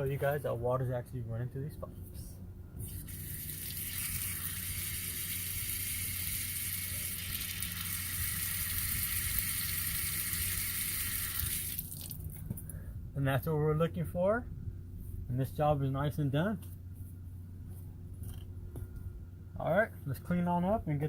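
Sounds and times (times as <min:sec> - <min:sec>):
water rushing from tap: 0:02.9 - 0:12.2.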